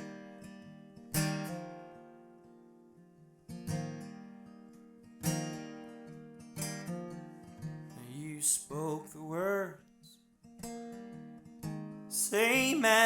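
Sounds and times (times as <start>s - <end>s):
acoustic guitar chords ringing: 0.0s - 13.0s
person singing: 8.0s - 9.8s, 12.1s - 13.0s.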